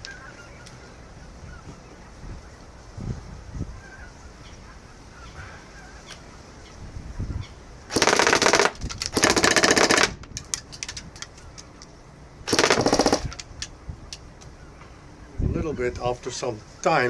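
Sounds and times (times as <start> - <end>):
electric airsoft gun firing bursts: 7.9 - 10.2, 12.5 - 13.7.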